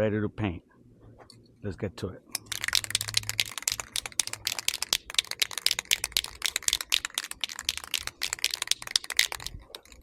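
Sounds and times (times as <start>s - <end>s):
spray can ball rattling: 2.4s - 10.0s.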